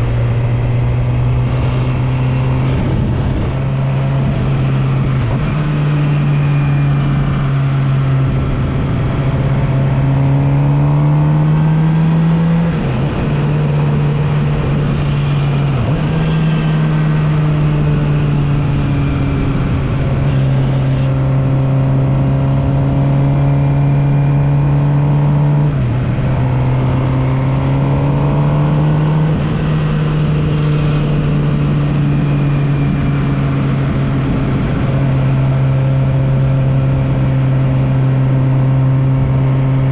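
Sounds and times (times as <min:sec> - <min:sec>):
wind rushing: 0:00.0 - 0:05.6
motorcycle engine running: 0:00.0 - 0:39.9.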